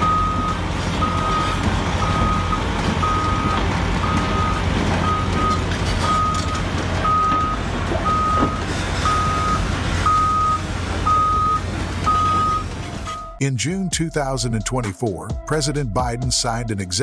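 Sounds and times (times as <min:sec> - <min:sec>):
vehicle backup alarm beeping: 0:00.0 - 0:13.5
low engine rumble: 0:00.0 - 0:14.7.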